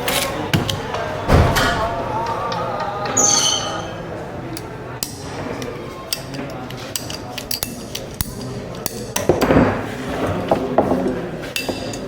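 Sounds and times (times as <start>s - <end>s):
tools clicking and knocking: 4.6s - 9.6s.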